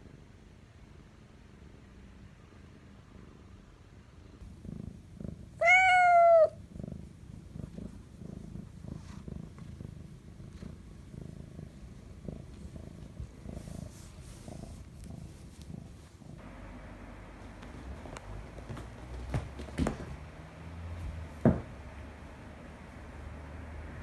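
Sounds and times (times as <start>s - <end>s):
cat purring: 4.4s - 24.0s
cat meowing: 5.6s - 6.6s.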